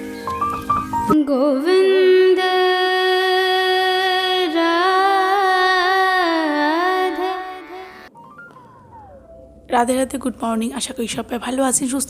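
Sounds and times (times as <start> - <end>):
sliding melody music: 0.0 - 1.5, 6.8 - 10.4.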